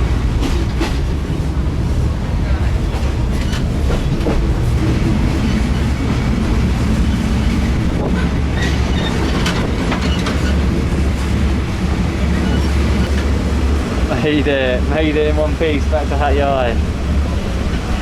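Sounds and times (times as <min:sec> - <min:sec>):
train rumbling: 0:00.0 - 0:18.0
wheels clicking over rail joints: 0:02.9 - 0:13.4.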